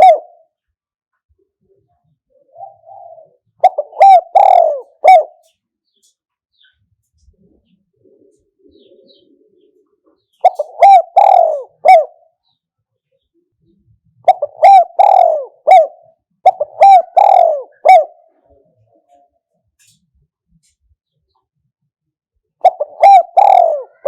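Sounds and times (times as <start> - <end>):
dove cooing: 0.0 - 0.6, 1.6 - 5.6, 7.2 - 12.6, 13.7 - 19.9, 22.6 - 24.0.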